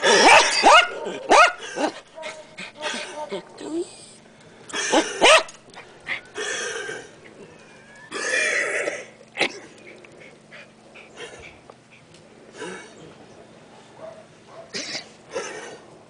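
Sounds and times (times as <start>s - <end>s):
dog coughing: 8.1s - 9.8s, 14.6s - 15.8s.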